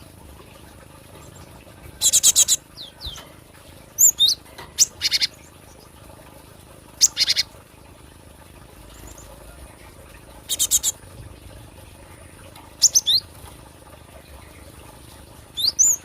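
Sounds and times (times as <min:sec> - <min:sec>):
bird chirping in bursts: 0:01.2 - 0:03.3, 0:03.9 - 0:06.0, 0:07.0 - 0:07.6, 0:08.8 - 0:09.4, 0:10.4 - 0:11.0, 0:12.2 - 0:13.4, 0:15.5 - 0:16.0.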